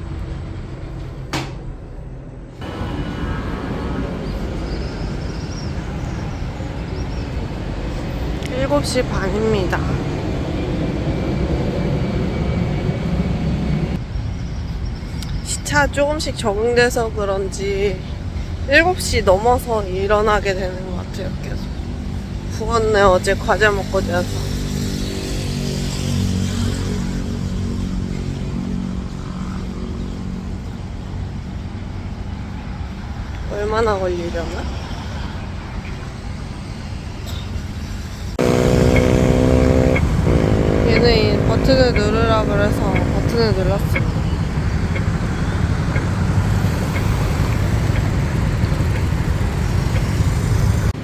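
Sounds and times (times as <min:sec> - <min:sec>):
road noise: 0:00.0 - 0:51.0
vehicle engine running: 0:38.4 - 0:51.0
crossing signal beeps: 0:38.7 - 0:49.2.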